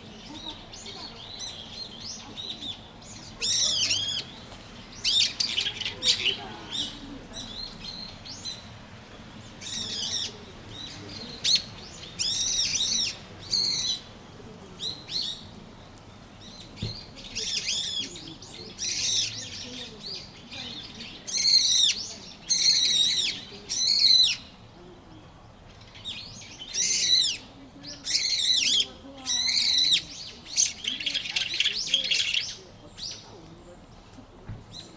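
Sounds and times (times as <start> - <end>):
bird calling: 0.2 - 8.7, 16.5 - 33.7.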